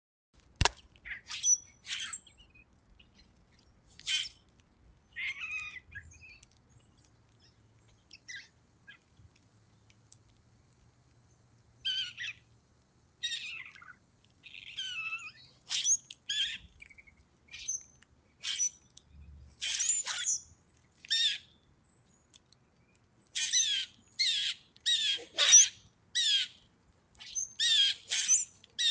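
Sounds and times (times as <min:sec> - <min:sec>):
grackles calling: 0:13.2 - 0:16.7, 0:23.4 - 0:26.6, 0:27.2 - 0:28.9.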